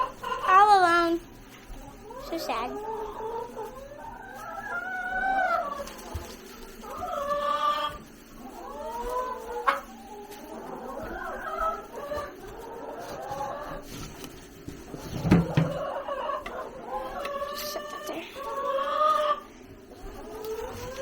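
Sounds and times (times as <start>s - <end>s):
hens clucking: 0.0s - 21.0s.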